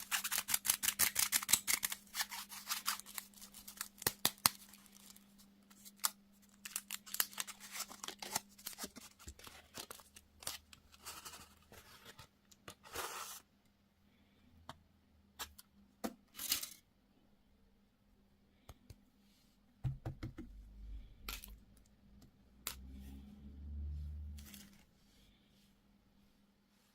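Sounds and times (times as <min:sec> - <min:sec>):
packaging tearing: 0:00.0 - 0:10.6
packaging crinkling and clicking: 0:00.2 - 0:10.8.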